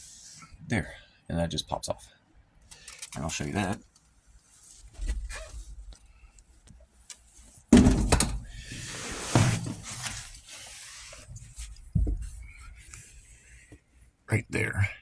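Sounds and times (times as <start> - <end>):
plastic and metal parts rattling: 2.7 - 4.0, 7.8 - 8.5.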